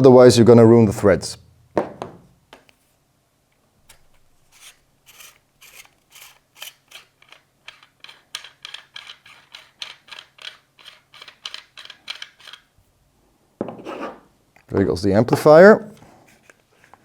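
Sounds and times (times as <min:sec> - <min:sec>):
metallic clicks and scrapes: 0:03.9 - 0:12.8.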